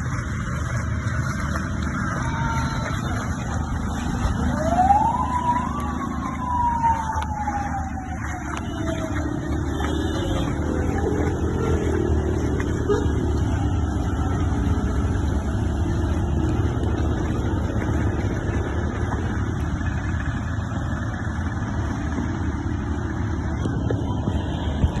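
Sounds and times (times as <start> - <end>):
street traffic rumbling: 0.0 - 25.0
siren: 1.6 - 19.0.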